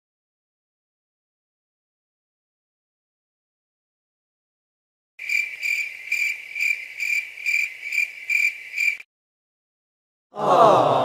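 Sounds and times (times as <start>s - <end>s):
crickets chirping: 5.2s - 9.0s.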